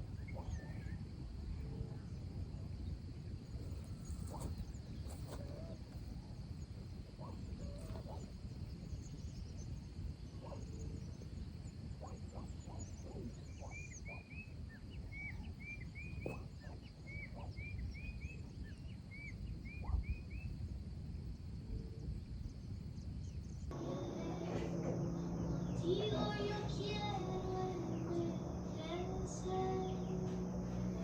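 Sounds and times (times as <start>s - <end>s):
high insect drone: 23.7s - 31.0s
low rumble: 23.7s - 31.0s.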